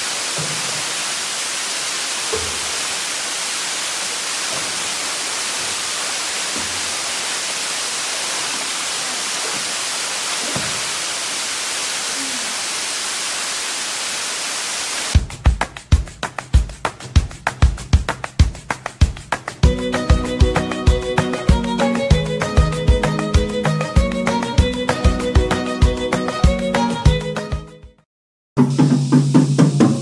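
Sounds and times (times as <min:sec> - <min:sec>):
waterfall rushing hiss: 0:00.0 - 0:15.2.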